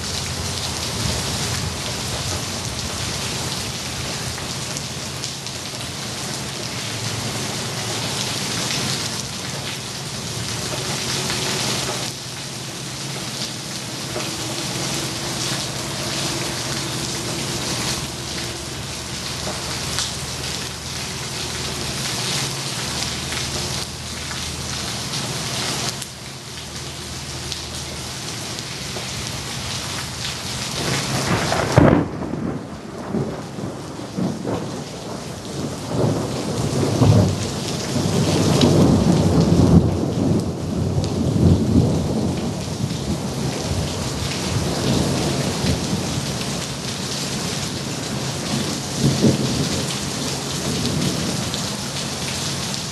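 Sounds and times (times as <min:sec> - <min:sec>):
heavy rain hissing: 0:00.0 - 0:52.9
rolling rumbles of thunder: 0:07.0 - 0:23.7, 0:30.6 - 0:52.2
sharp thunderclap: 0:30.8 - 0:40.6.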